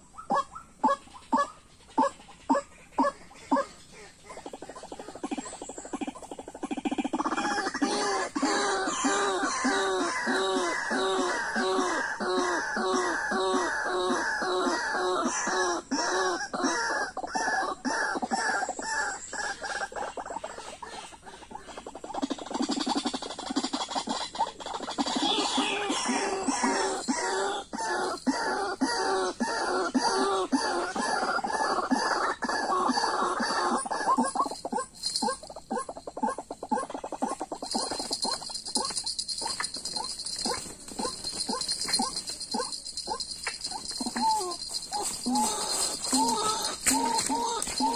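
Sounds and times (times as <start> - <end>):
birds croaking calls: 0.0 - 47.9
waterhen calling: 36.8 - 47.9.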